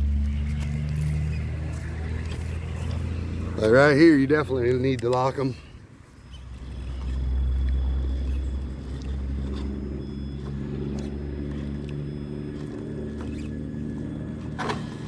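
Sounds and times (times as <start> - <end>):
toy car electric motor whining: 6.2 - 15.0.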